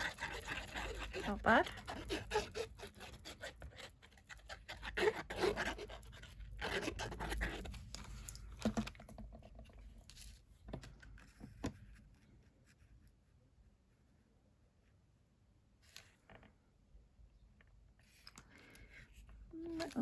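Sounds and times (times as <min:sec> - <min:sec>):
paper rustling and scraping: 0:19.6 - 0:20.0.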